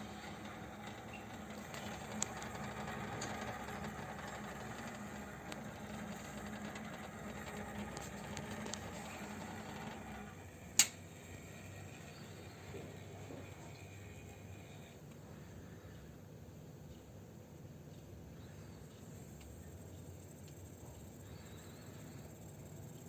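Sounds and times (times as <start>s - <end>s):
cooler fan humming: 0.0s - 23.0s
sharp click: 10.8s - 11.0s.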